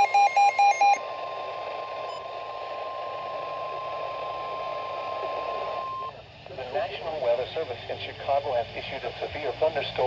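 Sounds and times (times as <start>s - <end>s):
rapid beeps: 0.0s - 1.0s
steady warning alarm tone: 0.0s - 1.0s
radio hiss: 1.4s - 10.0s.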